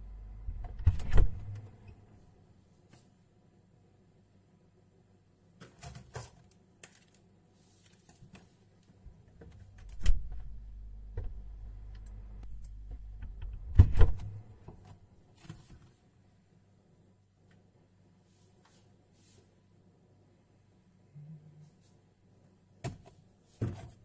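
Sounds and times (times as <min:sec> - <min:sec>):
refrigerator hum: 0:00.0 - 0:03.3, 0:04.0 - 0:18.0
refrigerator door pulled open: 0:00.7 - 0:01.6, 0:13.7 - 0:14.4.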